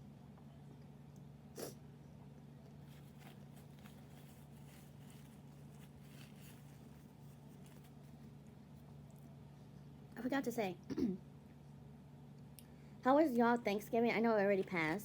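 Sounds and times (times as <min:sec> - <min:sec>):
nasal sniff: 0:01.6 - 0:01.8.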